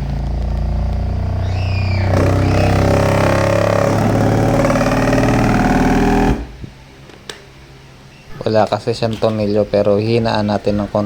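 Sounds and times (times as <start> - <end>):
subwoofer low-frequency test tone: 0.0 - 6.8
buzzing rattling distortion: 0.0 - 11.0.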